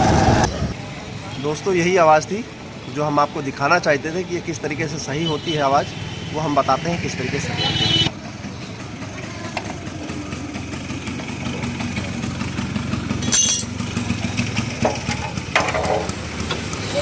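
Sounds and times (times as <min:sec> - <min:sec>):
motorcycle engine running: 0:07.0 - 0:17.0
drive chain and sprocket noise: 0:08.8 - 0:17.0.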